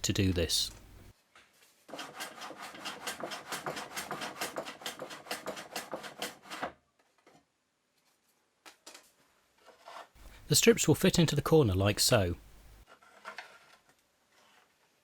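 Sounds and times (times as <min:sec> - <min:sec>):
hand saw cutting plywood: 0:01.9 - 0:06.8, 0:12.9 - 0:14.7.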